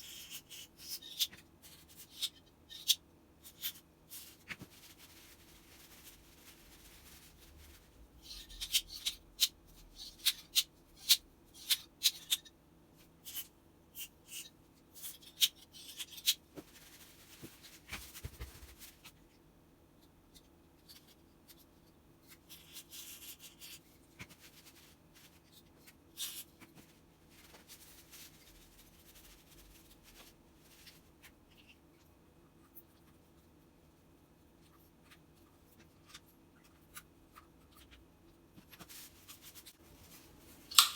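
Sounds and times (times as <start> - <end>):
soft rubbing: 3.5 - 8.6, 16.4 - 19.2, 22.3 - 31.8, 38.6 - 40.7.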